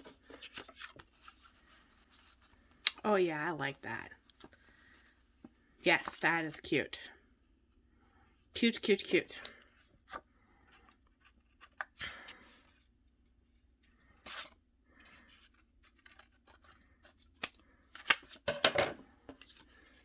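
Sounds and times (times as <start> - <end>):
paper rustling: 0.0 - 2.8
scissors snipping paper: 15.8 - 17.6.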